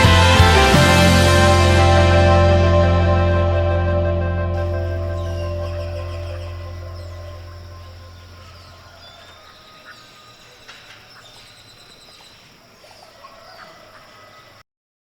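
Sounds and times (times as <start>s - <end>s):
low music note: 0.0s - 8.2s
birds chirping: 4.6s - 14.6s
frogs calling: 4.6s - 14.6s.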